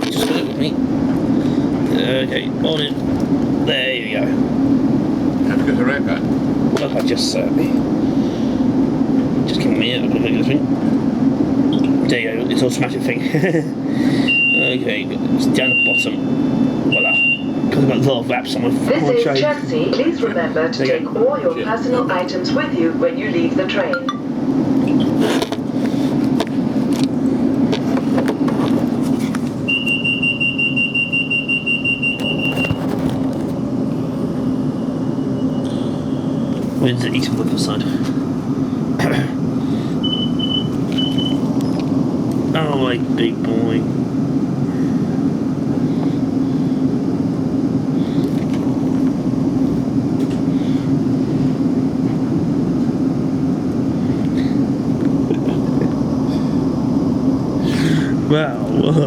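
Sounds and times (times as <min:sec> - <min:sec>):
train low hum: 0:00.0 - 0:59.0
train door warning beeps: 0:14.2 - 0:18.0, 0:29.6 - 0:32.9, 0:40.0 - 0:41.8.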